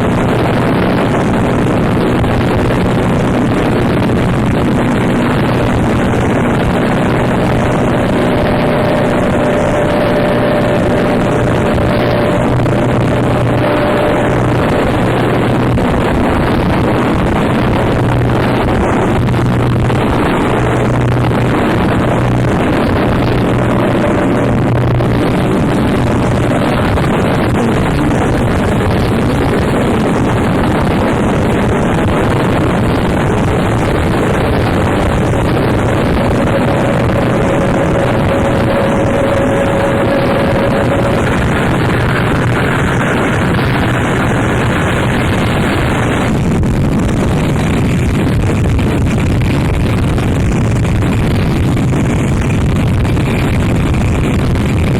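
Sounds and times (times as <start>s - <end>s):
low droning hum: 0.0s - 54.9s
wall of distorted noise: 0.0s - 54.9s
thin held tone: 4.2s - 16.8s, 33.2s - 45.8s.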